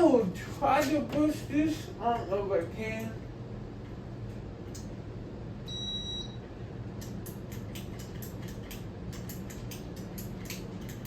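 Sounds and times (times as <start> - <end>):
steady low hum: 0.0 - 11.0
fan control clicks: 2.9 - 3.2, 3.9 - 5.0, 6.9 - 11.0.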